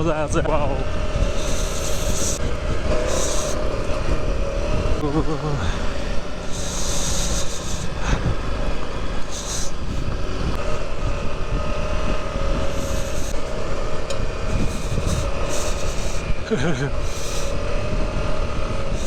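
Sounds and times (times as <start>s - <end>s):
motorcycle engine running: 0.0s - 19.0s
short hisses: 1.2s - 3.8s, 5.0s - 10.6s, 12.7s - 13.4s, 14.5s - 17.6s.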